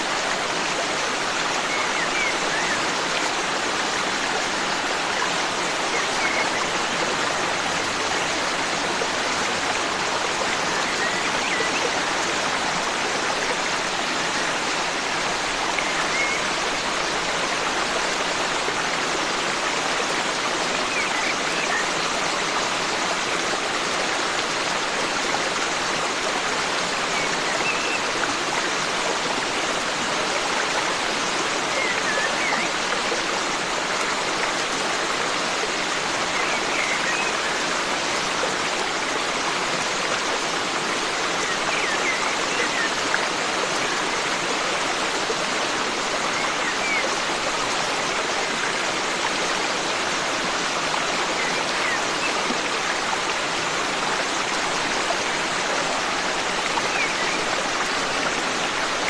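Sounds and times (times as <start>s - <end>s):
stream flowing water: 0.0s - 59.0s.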